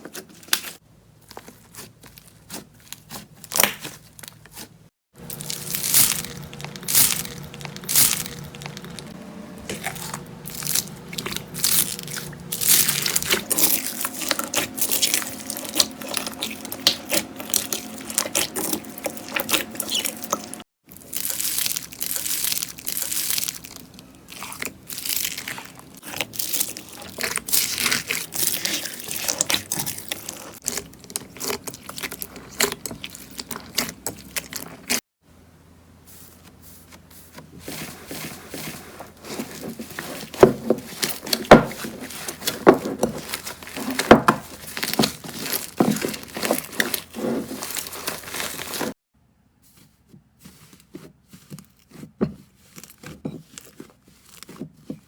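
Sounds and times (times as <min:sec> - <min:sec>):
slime squeezed by hand crackling: 0:05.3 - 0:09.0, 0:09.8 - 0:35.0.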